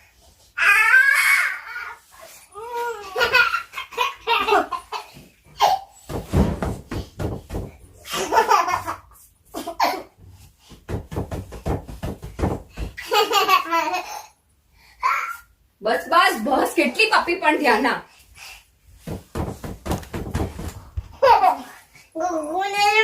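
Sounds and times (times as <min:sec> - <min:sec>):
toddlers laughing and giggling: 0:02.6 - 0:06.0, 0:08.0 - 0:10.0, 0:21.1 - 0:23.0.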